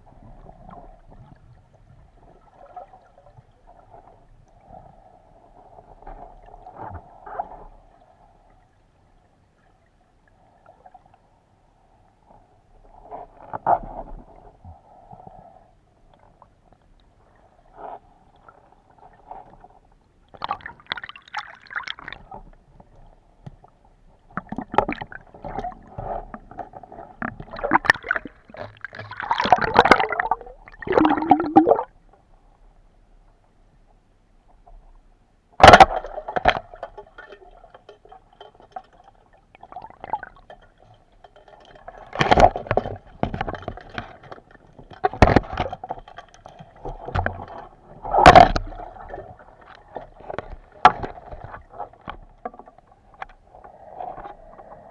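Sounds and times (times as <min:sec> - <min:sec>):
underwater gurgling and bubbling: 0:24.4 - 0:31.9.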